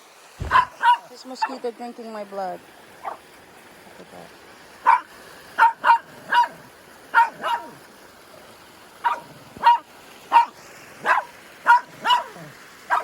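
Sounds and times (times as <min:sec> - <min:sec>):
dog barking: 0:00.4 - 0:01.6, 0:03.0 - 0:03.2, 0:04.8 - 0:07.8, 0:09.0 - 0:13.0.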